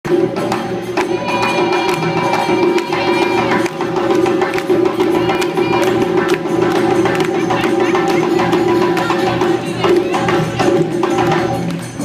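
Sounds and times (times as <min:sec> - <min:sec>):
drums in dense rhythm: 0:00.0 - 0:12.0
held high tone: 0:00.8 - 0:11.0.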